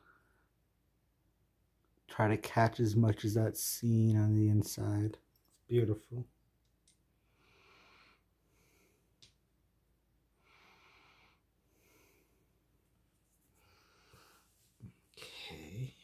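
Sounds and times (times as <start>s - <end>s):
soft breathing close to microphone: 7.2s - 9.1s, 10.4s - 12.6s, 13.4s - 16.0s.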